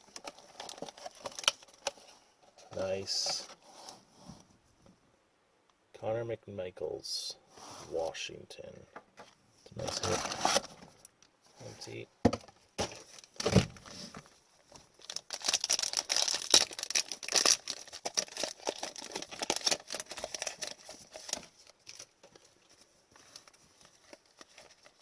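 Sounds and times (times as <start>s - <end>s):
foil wrapper tearing and crinkling: 0.0s - 1.9s, 15.0s - 22.6s, 23.3s - 25.0s.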